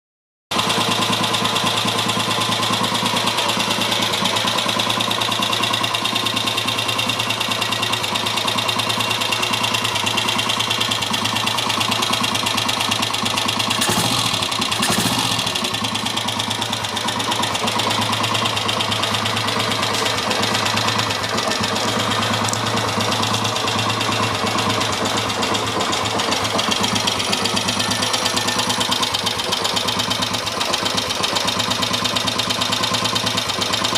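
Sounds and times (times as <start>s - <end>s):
motorcycle engine idling: 0.5s - 33.9s.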